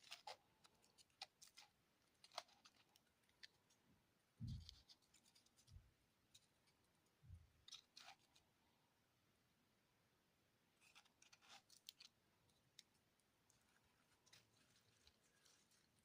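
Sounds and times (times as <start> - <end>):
candy packaging crinkling: 0.0 - 3.8, 7.6 - 8.4, 10.8 - 16.0.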